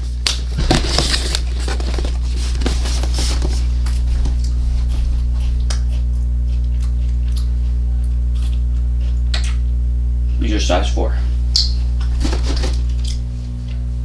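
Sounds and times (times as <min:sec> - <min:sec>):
electrical mains hum: 0:00.0 - 0:14.0
packaging scraping and rustling: 0:00.3 - 0:04.9, 0:12.0 - 0:13.3.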